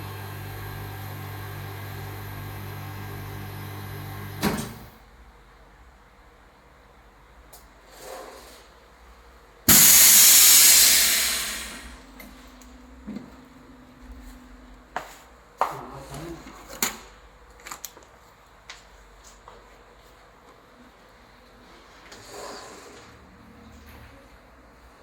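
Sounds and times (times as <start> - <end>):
vacuum sealer air hiss: 9.7 - 12.0
faint machine hum: 11.7 - 21.6.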